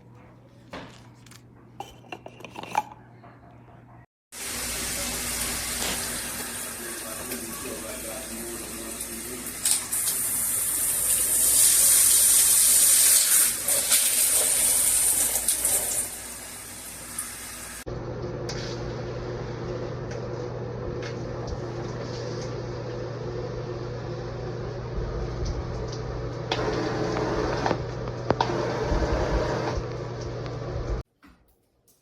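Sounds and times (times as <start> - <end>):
low hum: 17.9 - 31.0.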